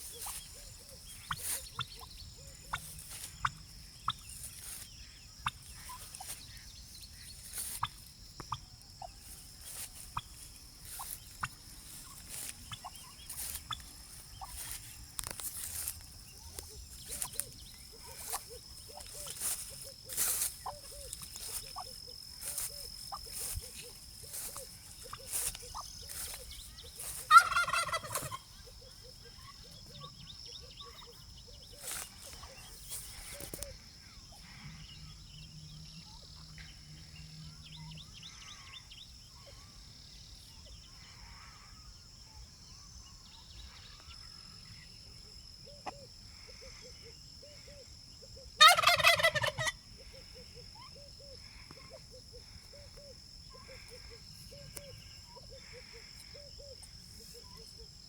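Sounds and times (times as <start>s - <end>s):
insects trilling: 0.0s - 58.0s
turkey gobbling: 11.0s - 14.6s, 27.0s - 28.6s, 48.6s - 49.8s.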